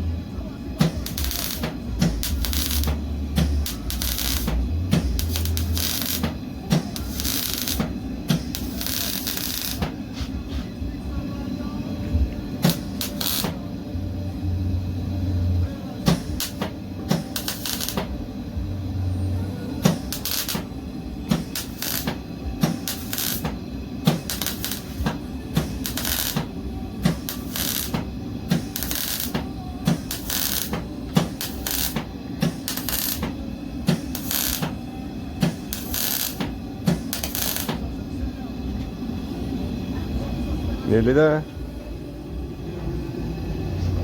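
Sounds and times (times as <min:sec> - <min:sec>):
welder low hum: 0:00.0 - 0:44.0
welder crackling spurts: 0:00.7 - 0:10.0, 0:12.6 - 0:13.7, 0:15.5 - 0:18.2, 0:19.8 - 0:37.9.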